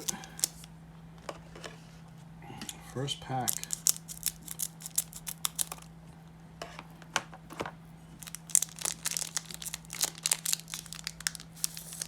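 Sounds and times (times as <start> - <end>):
card pack wrapper crinkling: 0.0 - 0.7, 3.3 - 5.9, 8.2 - 12.0.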